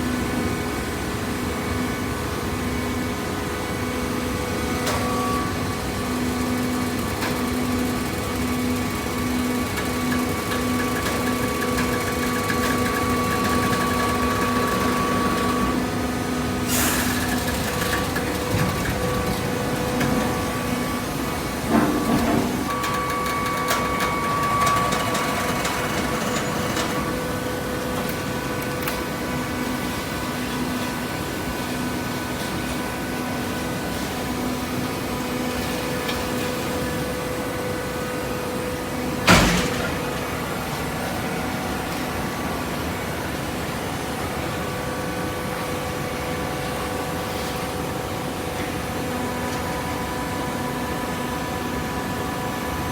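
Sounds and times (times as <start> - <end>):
baler motor and pump hum: 0.0 - 52.9
loud metal clank: 39.3 - 40.3.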